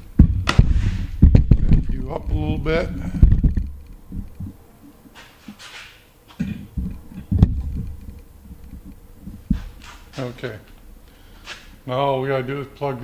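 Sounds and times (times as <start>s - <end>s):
knocks and rustles of handled parts: 0.0s - 10.8s.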